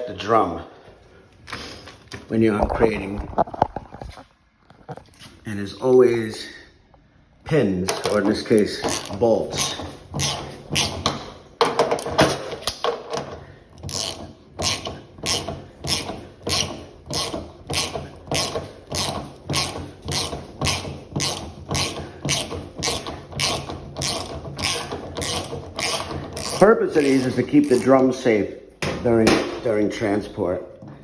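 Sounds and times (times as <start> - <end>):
ratchet wrench clicking: 7.9 - 11.2, 13.8 - 27.9.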